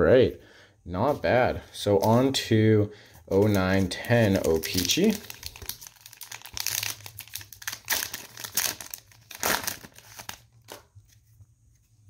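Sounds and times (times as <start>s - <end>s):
wrapper tearing and crinkling: 3.3s - 10.8s.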